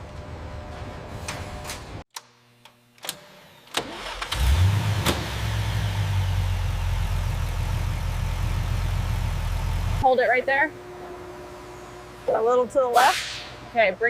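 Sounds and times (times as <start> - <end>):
engine starting and running: 3.0 - 10.0.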